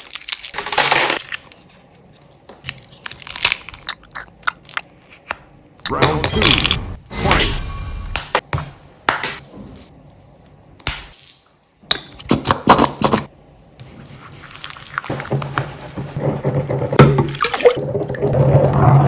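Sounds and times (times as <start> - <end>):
low hum: 5.8 - 8.8.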